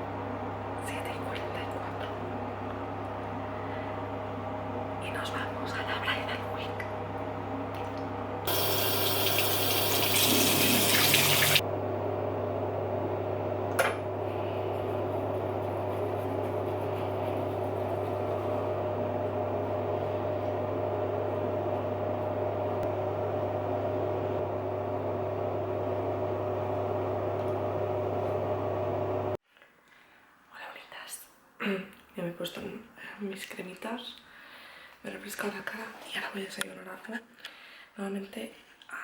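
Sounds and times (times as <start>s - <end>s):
steady hum: 0.0s - 29.4s
water running from a tap: 8.5s - 11.6s.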